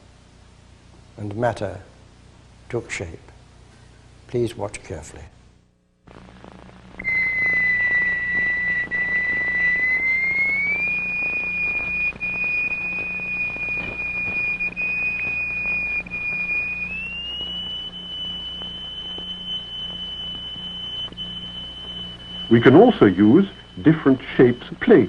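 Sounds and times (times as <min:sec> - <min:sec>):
high pure test tone: 0:06.1 - 0:25.0.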